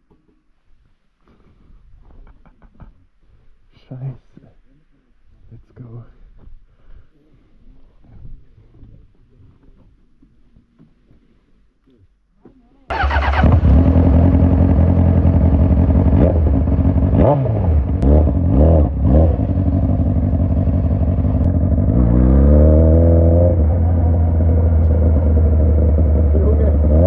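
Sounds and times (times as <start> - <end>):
motorcycle engine idling and revving: 12.9 - 27.0.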